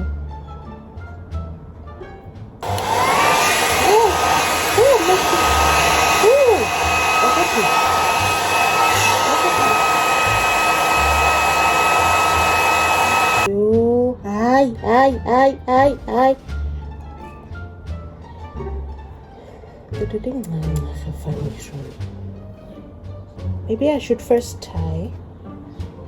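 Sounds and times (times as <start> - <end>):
hair dryer motor whine: 2.6 - 13.5.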